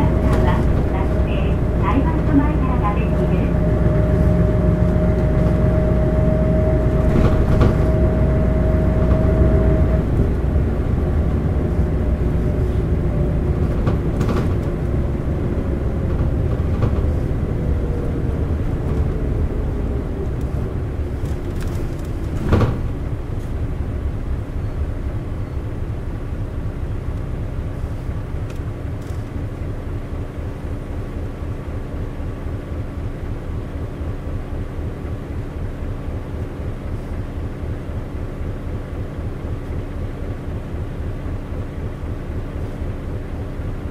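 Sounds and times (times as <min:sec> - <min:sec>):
high-pitched drivetrain whine: 0:00.0 - 0:27.3
bus engine rumble: 0:00.0 - 0:43.9.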